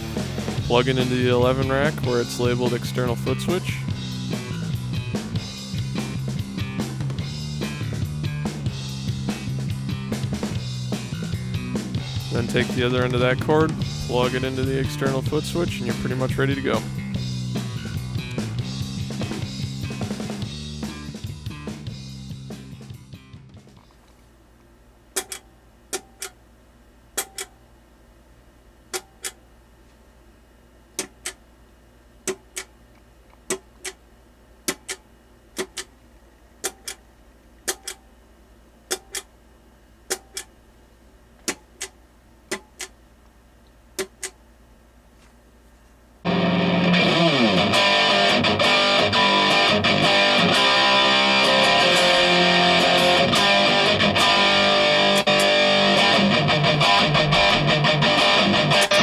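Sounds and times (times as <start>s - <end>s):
distorted electric guitar: 0.0s - 22.0s, 46.2s - 59.0s
foot switch clicking: 25.2s - 26.4s, 27.2s - 27.6s, 28.9s - 29.4s, 31.0s - 31.4s, 32.3s - 32.7s, 34.7s - 35.0s, 35.6s - 35.9s, 36.6s - 37.0s, 37.7s - 38.0s, 38.9s - 39.3s, 40.1s - 40.5s, 41.4s - 43.0s, 44.0s - 44.4s.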